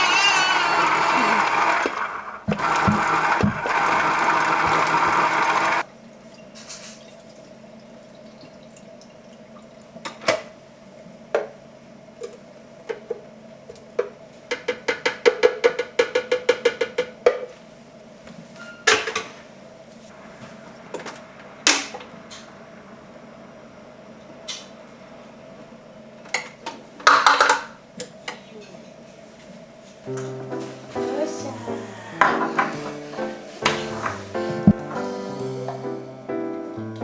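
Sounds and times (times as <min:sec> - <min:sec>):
plastic containers knocking and clicking: 0:14.5 - 0:17.5.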